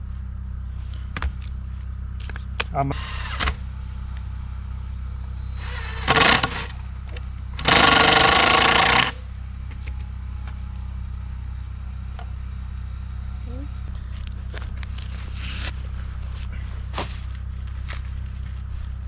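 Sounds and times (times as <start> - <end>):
steady low hum: 0.0 - 19.0
power tool running: 2.9 - 3.7, 5.5 - 9.3.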